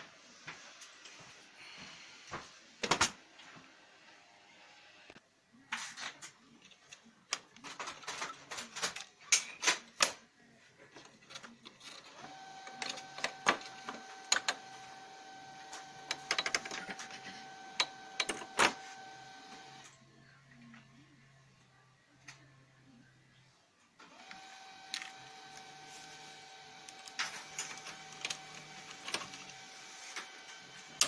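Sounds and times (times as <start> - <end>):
printer drive whine: 12.0 - 20.0, 24.0 - 31.0
printer repeated clicking: 12.2 - 19.9, 24.1 - 31.0.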